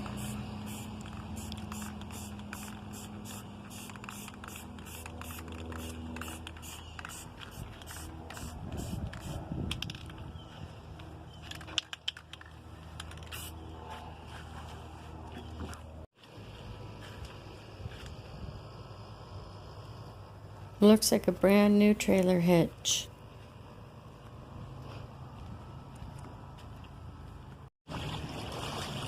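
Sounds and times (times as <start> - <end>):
spray paint can spraying: 0.0 - 10.1, 11.6 - 13.6.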